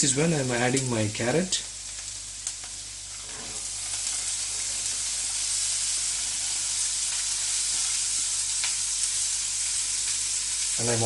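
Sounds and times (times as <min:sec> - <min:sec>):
vegetables sizzling in hot oil: 0:00.0 - 0:11.0.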